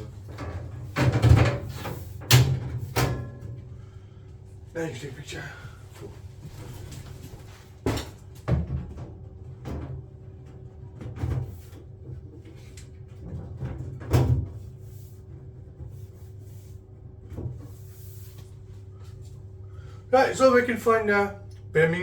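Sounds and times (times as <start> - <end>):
gas boiler humming: 0.0 - 22.0.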